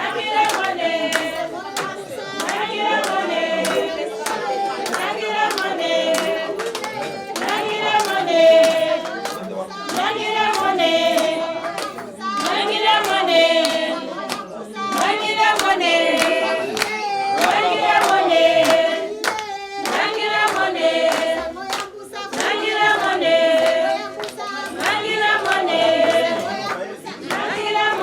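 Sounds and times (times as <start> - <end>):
group of voices singing: 0.0 - 28.0
hand clapping: 0.0 - 28.0.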